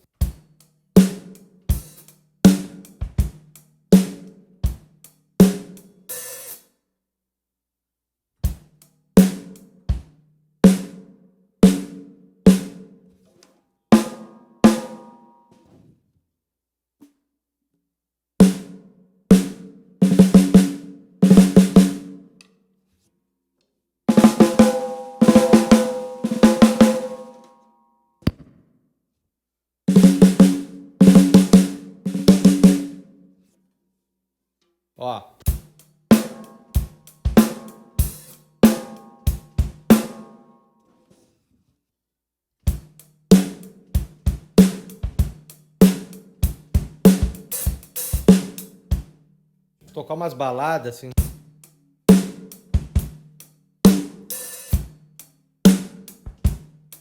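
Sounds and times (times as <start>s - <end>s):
drum kit groove: 0.0s - 6.6s, 8.5s - 10.1s, 29.9s - 32.8s, 35.0s - 40.3s, 42.7s - 49.1s, 49.9s - 57.0s.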